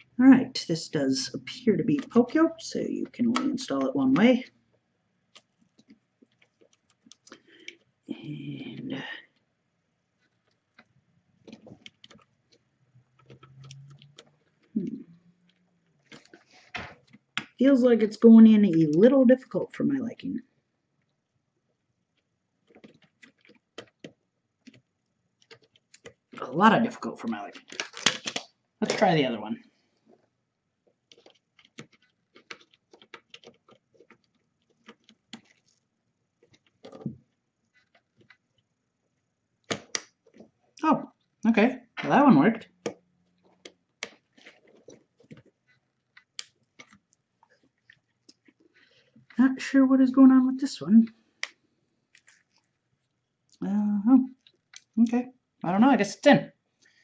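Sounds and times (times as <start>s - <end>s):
small plastic and metal clicks: 27.4s - 29.0s, 31.0s - 35.8s.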